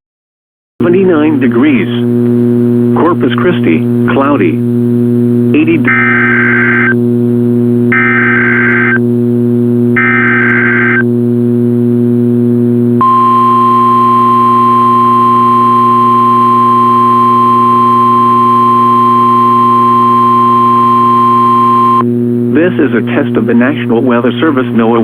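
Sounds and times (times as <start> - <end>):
low electrical hum: 0.8 - 25.0
buzzy digital data bursts: 5.3 - 7.0, 7.9 - 9.0, 10.0 - 11.0
steady warning alarm tone: 5.6 - 7.0, 7.9 - 9.0, 10.0 - 11.1, 13.0 - 22.1.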